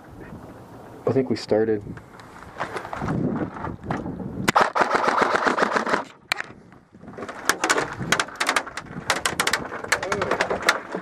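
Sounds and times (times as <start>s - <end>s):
airsoft gun firing: 4.5s - 6.1s.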